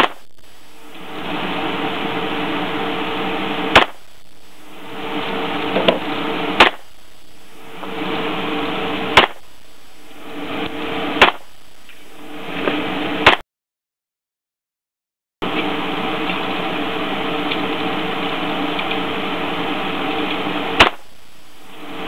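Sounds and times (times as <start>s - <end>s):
steady hum: 0.0s - 13.4s, 15.4s - 22.0s
gunshots: 3.7s - 4.0s, 6.6s - 6.9s.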